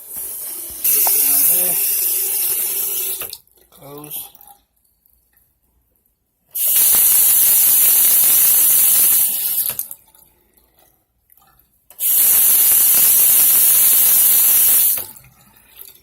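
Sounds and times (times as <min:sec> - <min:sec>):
water running into sink basin: 0:00.0 - 0:04.6.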